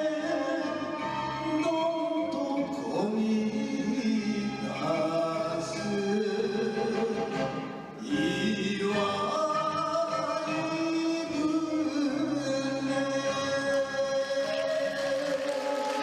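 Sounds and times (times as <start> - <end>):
musical accompaniment: 0.0 - 16.0
person singing long notes: 0.0 - 16.0.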